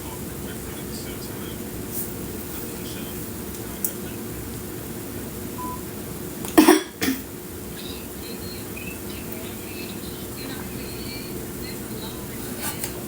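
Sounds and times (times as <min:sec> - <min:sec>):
steady low hum: 0:00.0 - 0:13.0
woman coughing: 0:06.5 - 0:07.3.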